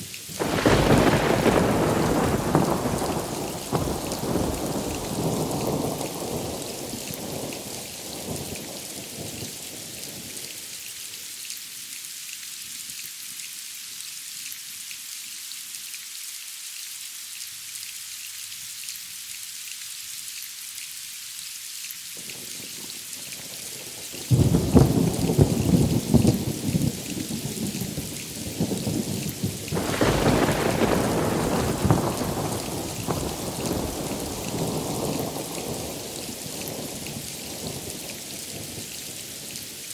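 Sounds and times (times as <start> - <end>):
steady rain hissing: 0.0 - 39.9
loud thunderclap: 0.4 - 7.7, 24.3 - 27.1, 28.8 - 37.9
thunder rumbling: 0.4 - 8.4, 24.3 - 38.8.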